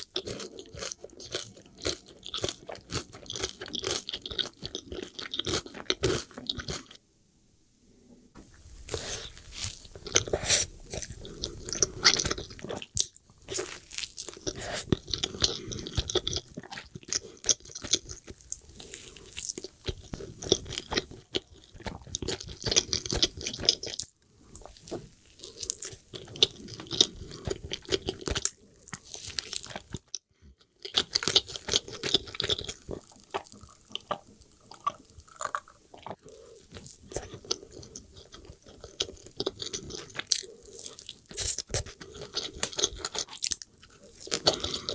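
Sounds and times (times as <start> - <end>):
crunchy bites and wet chewing: 8.9 - 44.9.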